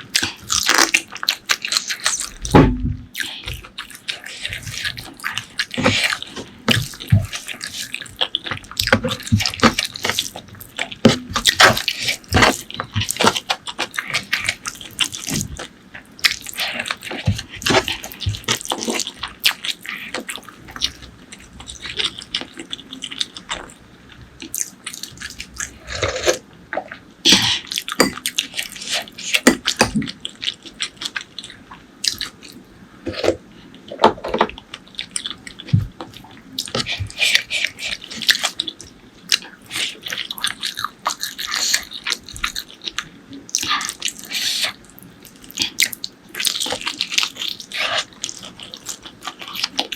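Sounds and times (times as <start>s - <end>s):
wet chewing and lip-smacking: 0.1s - 23.8s, 34.6s - 49.9s.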